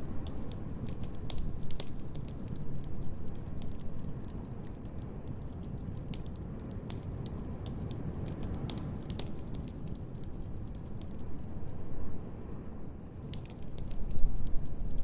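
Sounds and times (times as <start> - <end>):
fire pops and snaps: 0.0 - 11.9, 13.2 - 15.0
wood fire crackling: 0.0 - 12.1, 13.2 - 15.0.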